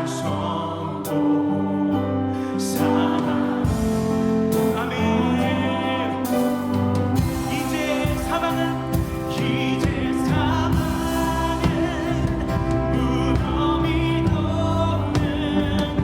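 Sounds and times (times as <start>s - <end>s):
person singing with vibrato: 0.0s - 16.0s
worship band playing: 0.0s - 16.0s.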